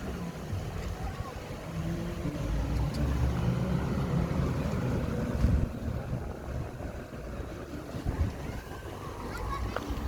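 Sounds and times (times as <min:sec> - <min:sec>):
heavy machine engine rumbling: 0:00.0 - 0:10.0.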